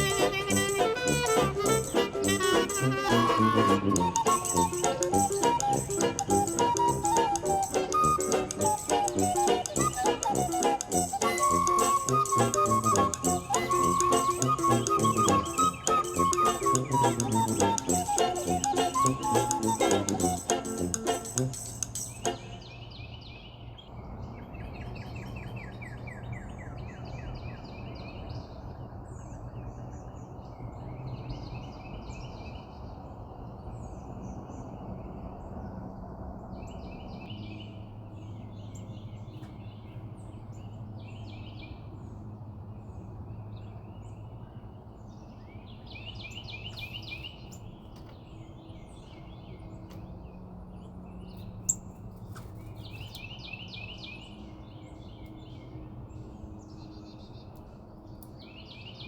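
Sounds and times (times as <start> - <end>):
songbirds chirping and singing: 0.0 - 23.0.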